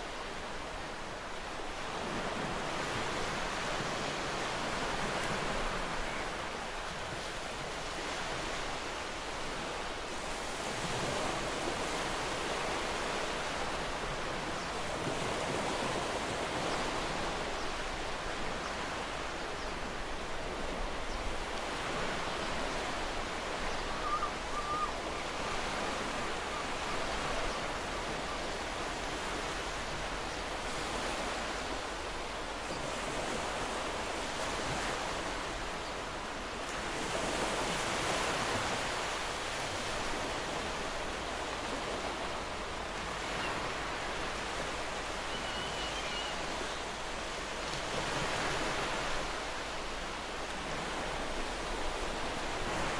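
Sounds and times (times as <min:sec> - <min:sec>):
sea surf: 0:00.0 - 0:52.9
wind: 0:00.0 - 0:52.9.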